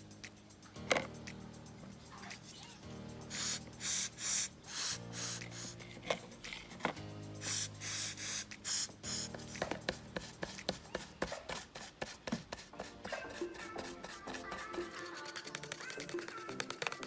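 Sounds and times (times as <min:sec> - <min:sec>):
background music: 0:00.0 - 0:17.0
short hissing burst: 0:03.3 - 0:05.8, 0:07.4 - 0:09.3.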